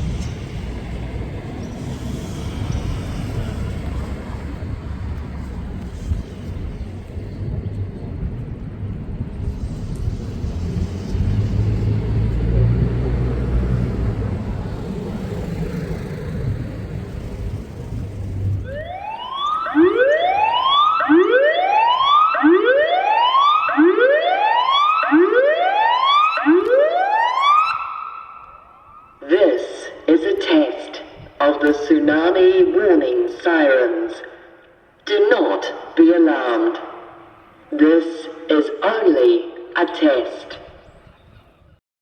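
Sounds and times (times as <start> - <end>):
low rumble: 0.0 - 21.0
siren whoops: 18.6 - 29.2.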